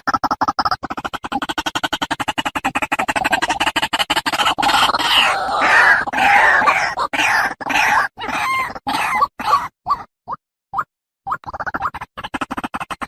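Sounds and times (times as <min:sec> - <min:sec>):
waterhen calling: 0:04.3 - 0:10.1.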